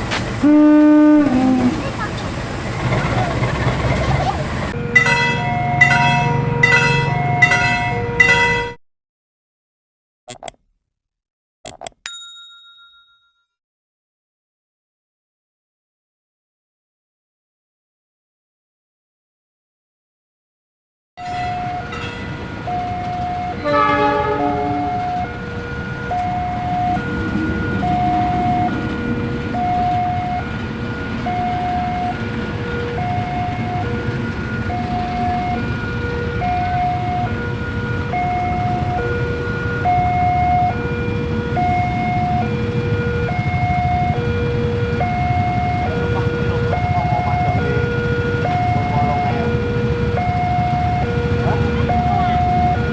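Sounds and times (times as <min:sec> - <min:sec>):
diesel locomotive horn blast: 0:00.1 - 0:03.1, 0:04.4 - 0:08.8, 0:23.3 - 0:43.3.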